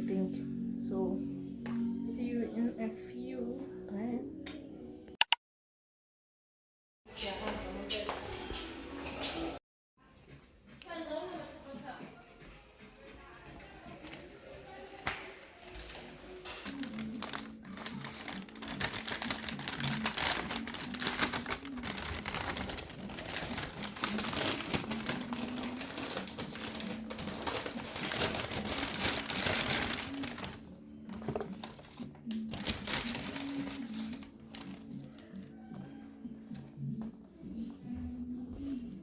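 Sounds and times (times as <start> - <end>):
background music low melody: 0.0 - 5.2, 7.2 - 39.0
dense rapid crackling and rustling: 16.5 - 30.6, 31.2 - 35.2.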